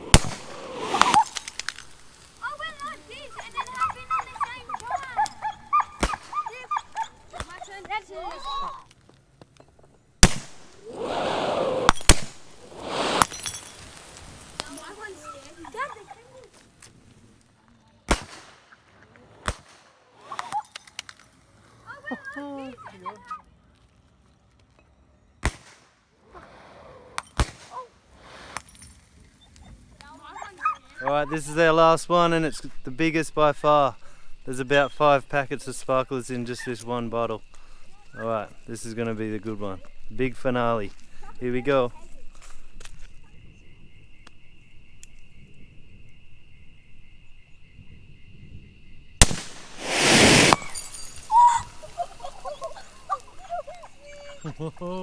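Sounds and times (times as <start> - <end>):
loud sharp bangs: 0.0 - 1.5, 10.2 - 10.8, 49.2 - 51.0
rushing hiss: 0.0 - 4.4, 10.2 - 16.3, 28.0 - 28.8, 49.2 - 54.4
small cracks: 0.1 - 3.9, 8.7 - 10.8, 16.4 - 21.7.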